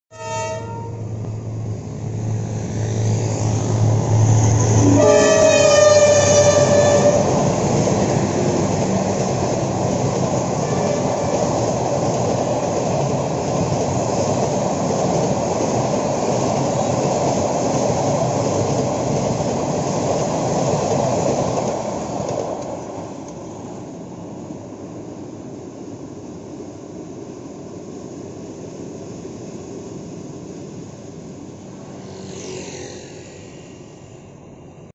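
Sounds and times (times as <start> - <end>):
train horn: 0.1 - 1.1, 4.7 - 7.4, 10.6 - 11.5
train cars rumbling past: 0.1 - 34.9
diesel locomotive engine droning: 0.2 - 34.9.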